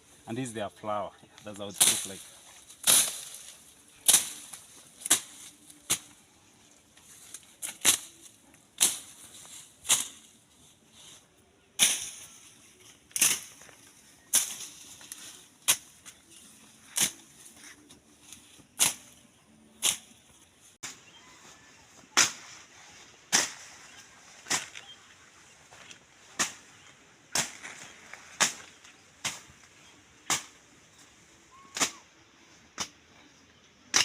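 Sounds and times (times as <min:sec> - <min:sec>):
blade cutting bushes: 0:01.6 - 0:06.2, 0:07.3 - 0:10.4, 0:11.8 - 0:17.6, 0:18.3 - 0:19.2.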